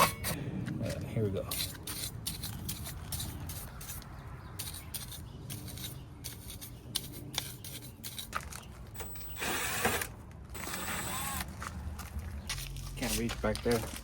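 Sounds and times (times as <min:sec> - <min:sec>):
tools scraping on metal housing: 0:00.0 - 0:00.4
loud rasping burst: 0:09.3 - 0:11.5.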